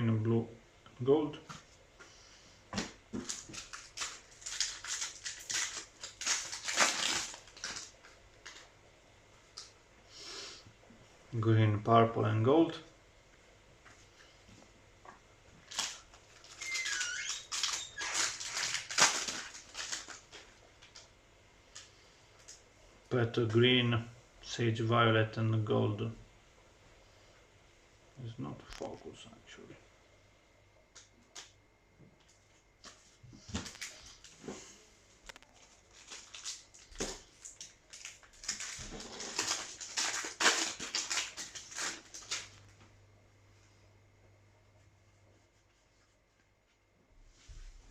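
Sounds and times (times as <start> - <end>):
foil wrapper crinkling and tearing: 2.8 - 8.8, 15.6 - 21.1, 33.6 - 34.4, 35.3 - 42.7.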